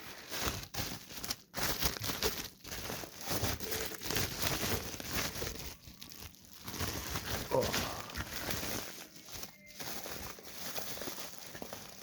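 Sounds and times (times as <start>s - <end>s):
packaging crinkling: 0.0s - 12.0s.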